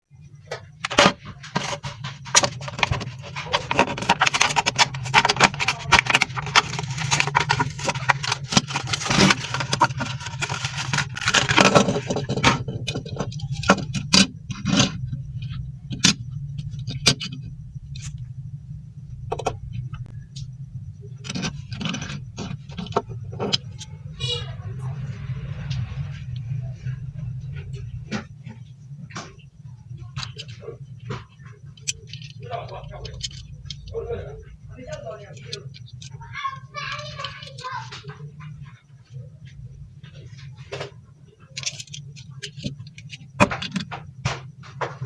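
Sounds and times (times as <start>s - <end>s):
steady low hum: 0.0s - 45.0s
plastic and cardboard crinkling: 0.5s - 18.1s, 27.4s - 38.8s, 39.4s - 45.0s.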